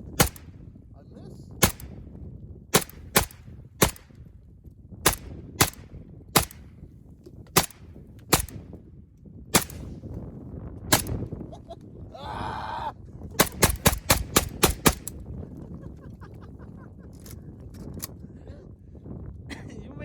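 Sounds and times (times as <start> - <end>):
rifle shots: 0.0 - 0.6, 1.6 - 2.0, 2.7 - 4.2, 5.0 - 6.7, 7.5 - 8.6, 9.6 - 10.0, 10.9 - 11.3, 13.4 - 15.2.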